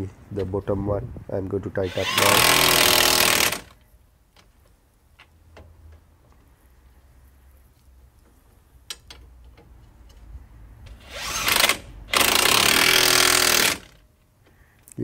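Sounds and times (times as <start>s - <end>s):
impact wrench bursts: 1.8s - 3.8s, 11.0s - 14.0s.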